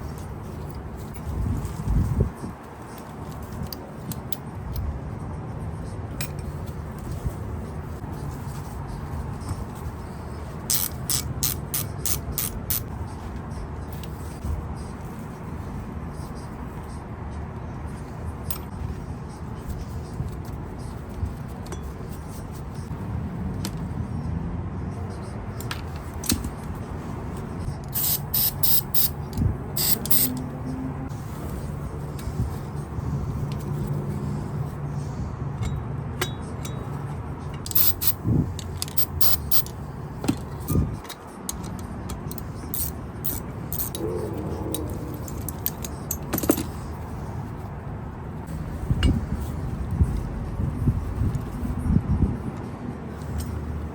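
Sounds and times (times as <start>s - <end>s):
metal tools clinking: 27.8s - 30.4s, 37.5s - 39.8s, 42.4s - 44.1s
low steady hum: 43.3s - 46.2s.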